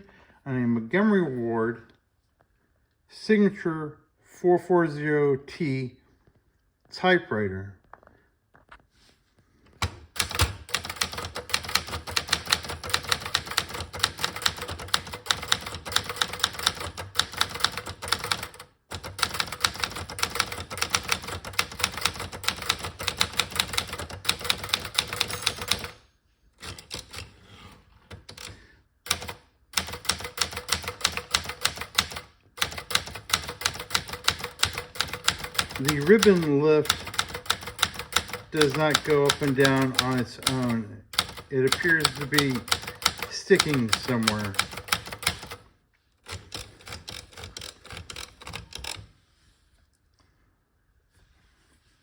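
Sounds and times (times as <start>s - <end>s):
typewriter keystrokes: 9.8s - 26.0s, 28.1s - 45.6s, 46.3s - 49.0s.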